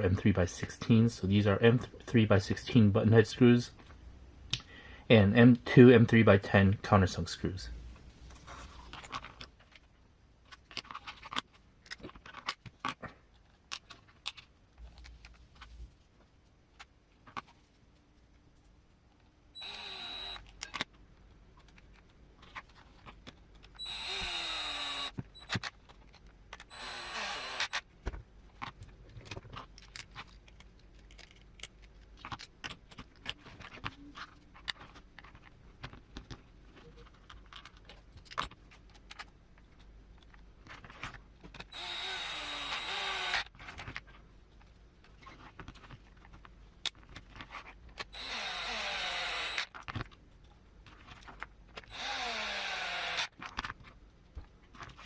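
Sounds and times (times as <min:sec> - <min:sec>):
electric screwdriver whirring: 0:19.6 - 0:20.4, 0:23.8 - 0:25.6, 0:26.7 - 0:27.8, 0:41.7 - 0:43.5, 0:48.1 - 0:49.7, 0:51.9 - 0:53.4.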